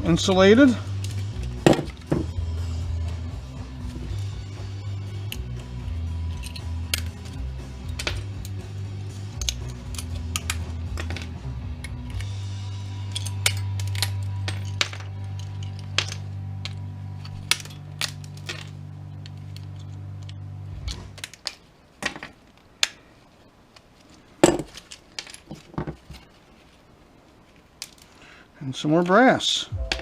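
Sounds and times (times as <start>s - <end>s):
scrap metal clinking and clattering: 6.2s - 8.6s, 9.3s - 23.0s, 23.7s - 26.8s.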